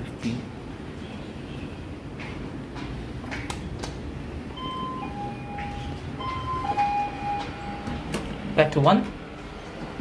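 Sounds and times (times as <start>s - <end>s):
lift car humming: 4.5s - 8.6s.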